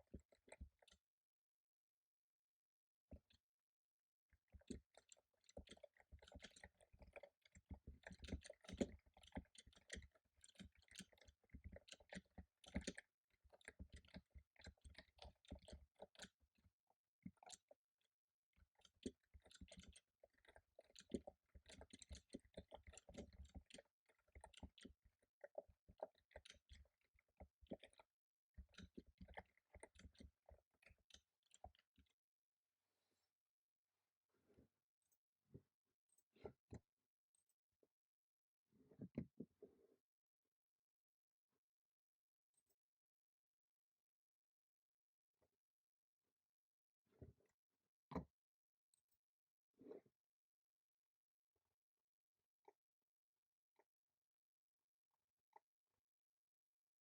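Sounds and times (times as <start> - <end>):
fast typing on keyboard: 4.6 - 16.4, 18.8 - 28.0.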